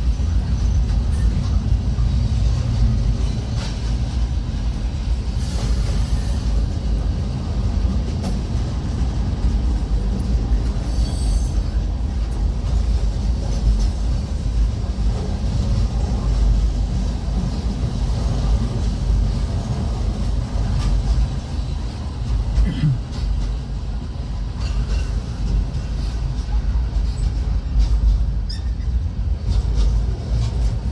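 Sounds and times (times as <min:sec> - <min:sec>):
train wheels rumbling on rails: 0:00.0 - 0:30.9.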